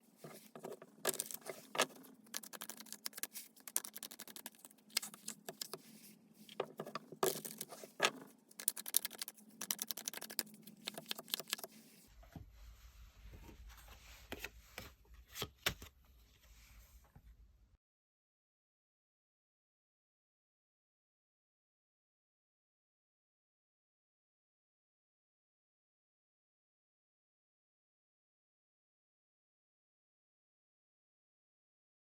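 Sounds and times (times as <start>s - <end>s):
cards being shuffled: 0.2s - 12.0s.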